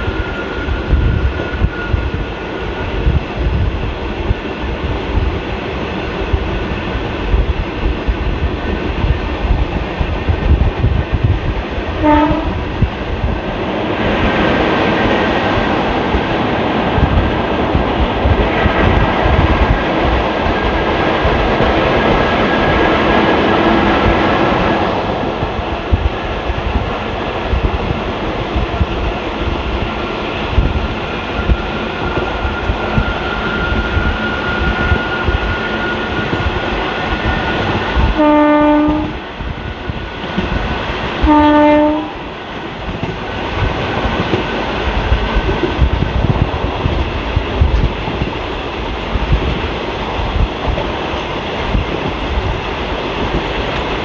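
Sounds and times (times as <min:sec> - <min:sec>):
train wheels rumbling on track: 0:00.0 - 0:54.0
train horn toot: 0:12.0 - 0:12.6, 0:38.2 - 0:39.2, 0:41.2 - 0:42.2.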